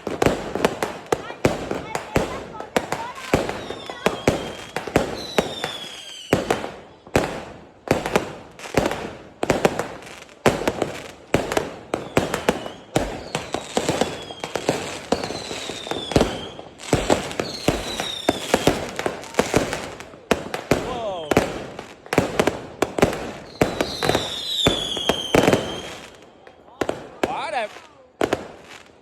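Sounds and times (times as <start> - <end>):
fireworks bangs: 0.0 - 29.0
firework shells whistling: 3.4 - 6.4, 12.0 - 19.2, 23.3 - 26.6.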